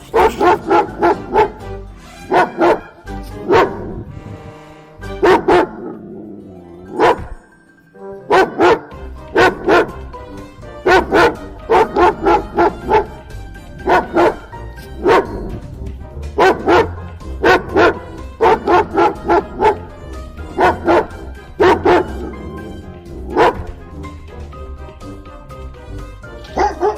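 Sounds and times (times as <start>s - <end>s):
dog barking: 0.0s - 1.6s, 2.3s - 3.9s, 5.2s - 6.1s, 6.9s - 7.4s, 8.3s - 10.1s, 10.8s - 15.6s, 16.4s - 23.8s, 26.5s - 26.9s.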